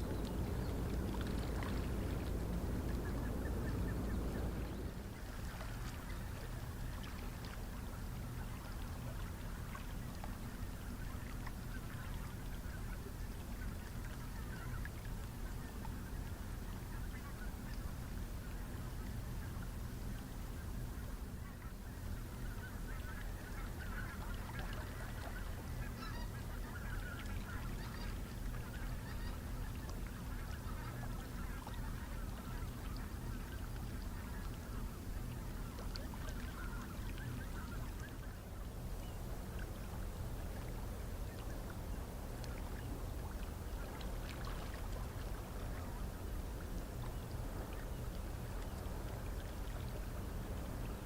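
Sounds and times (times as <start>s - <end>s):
ship diesel engine drone: 0.0s - 5.1s
geese honking and chattering: 0.0s - 6.8s, 20.7s - 39.3s.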